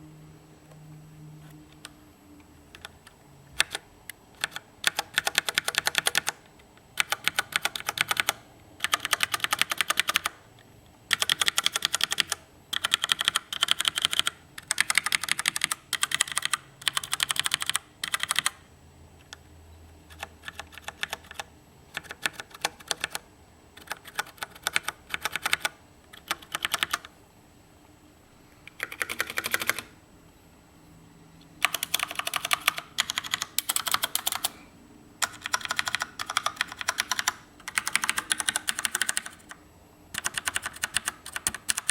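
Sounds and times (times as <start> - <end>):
mechanical keyboard typing: 3.6 - 3.8, 4.4 - 6.4, 7.0 - 10.4, 11.1 - 18.6, 20.1 - 23.2, 23.8 - 27.1, 28.7 - 29.9, 31.6 - 34.6, 35.2 - 41.9.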